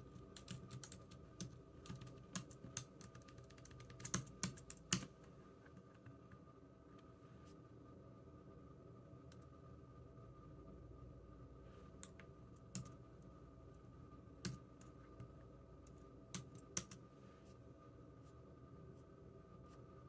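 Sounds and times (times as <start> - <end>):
faint room hum: 0.0 - 20.0
computer keyboard key clicks: 0.4 - 5.1.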